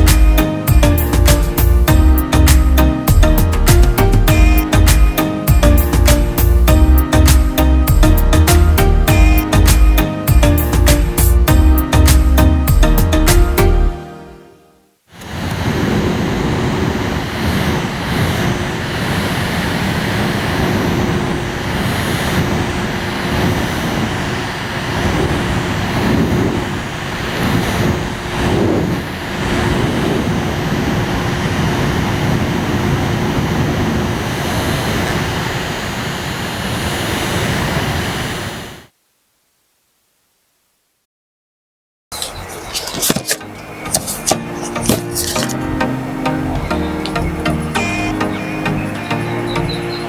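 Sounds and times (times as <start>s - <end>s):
electric fan running: 15.2s - 38.9s, 42.2s - 50.0s.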